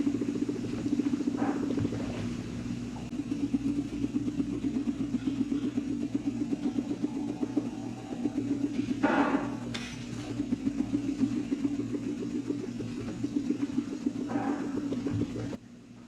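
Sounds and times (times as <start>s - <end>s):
guinea pig purring rumble: 0.0s - 15.6s.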